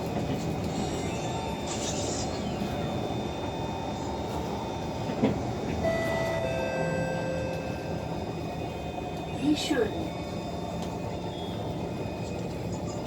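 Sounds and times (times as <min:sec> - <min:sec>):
train rolling rumble: 0:00.0 - 0:13.0
thin whining drive tones: 0:00.4 - 0:09.3.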